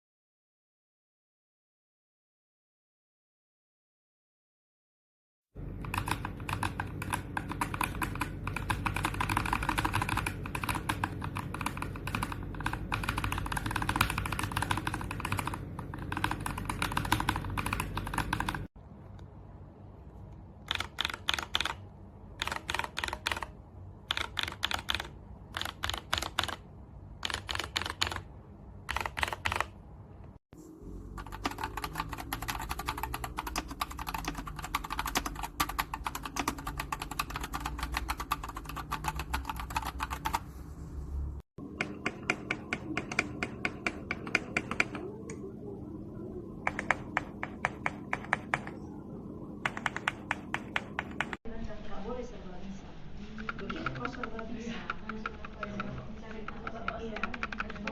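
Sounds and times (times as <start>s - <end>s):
typing on mechanical keyboard: 5.6s - 18.8s, 20.6s - 26.6s, 27.2s - 29.8s, 31.1s - 40.4s, 41.7s - 45.4s, 46.6s - 48.8s, 49.6s - 51.4s, 53.4s - 57.9s.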